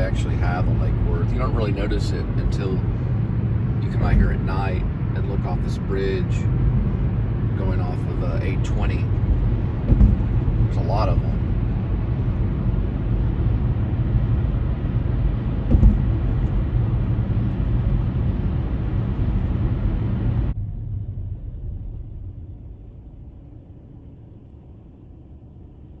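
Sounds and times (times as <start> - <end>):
car driving low rumble: 0.0 - 26.0
car bump: 4.0 - 4.5, 9.8 - 11.2, 15.6 - 16.6.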